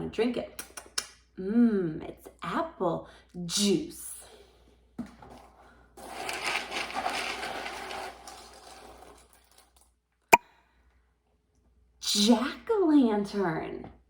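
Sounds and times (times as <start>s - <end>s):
hands rummaging through dried beans: 6.0s - 9.6s.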